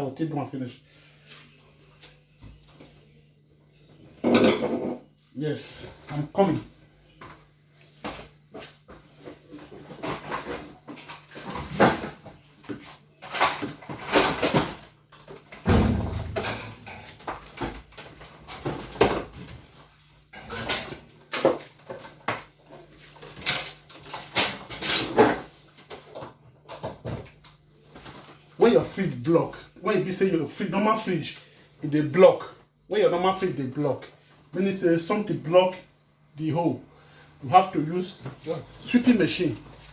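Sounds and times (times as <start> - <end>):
heavy thump: 15.7 - 16.8
hard objects knocking and clattering: 15.7 - 18.0.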